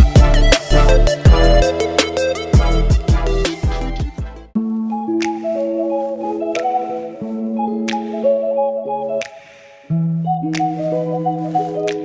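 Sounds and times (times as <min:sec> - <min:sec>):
beat with deep kick drums: 0:00.0 - 0:04.5.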